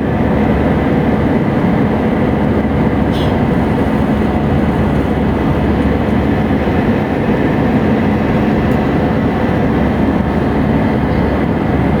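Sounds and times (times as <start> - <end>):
jet engines roaring: 0.0 - 12.0
rushing air: 0.0 - 12.0
cabin hum: 2.8 - 11.5.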